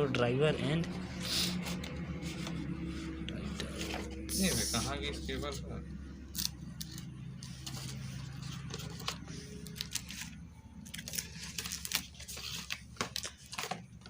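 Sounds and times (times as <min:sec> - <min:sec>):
cardboard and plastic rustling: 0:06.9 - 0:14.0.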